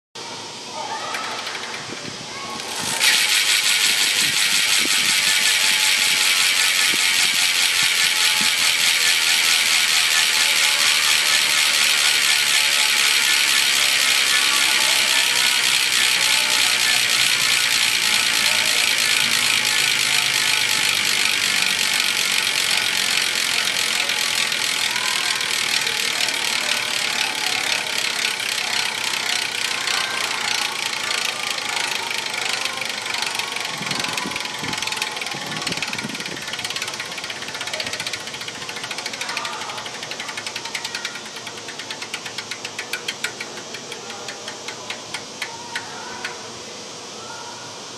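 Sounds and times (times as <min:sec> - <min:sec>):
freehub ratchet buzzing: 0:00.8 - 0:47.1.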